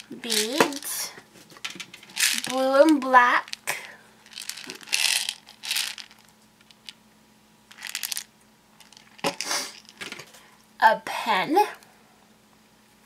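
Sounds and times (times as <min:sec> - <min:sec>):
plastic packaging crinkling: 0:01.7 - 0:07.0, 0:07.7 - 0:10.2.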